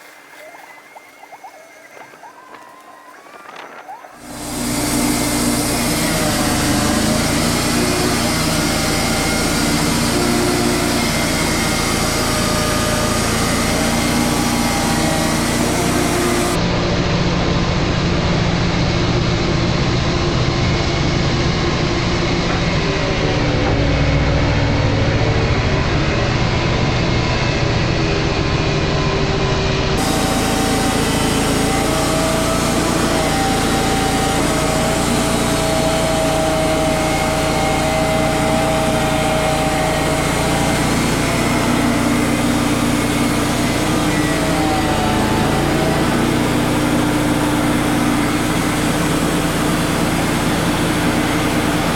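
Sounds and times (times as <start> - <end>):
band sawmill sawing log: 1.9 - 16.8, 29.9 - 51.9.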